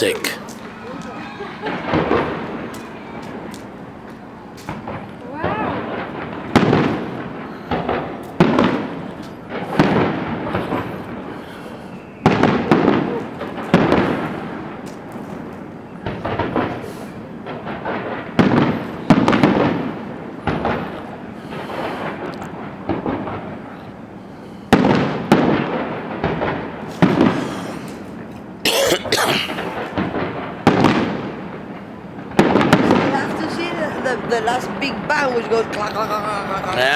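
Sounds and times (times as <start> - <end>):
firework crackle: 0.0 - 28.6, 29.5 - 36.9
firework shells bursting: 24.7 - 36.9.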